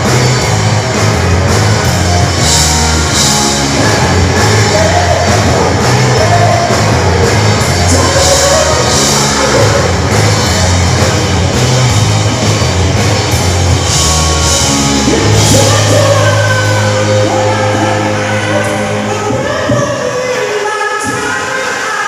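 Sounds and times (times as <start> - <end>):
loud rock band music: 0.0 - 22.0.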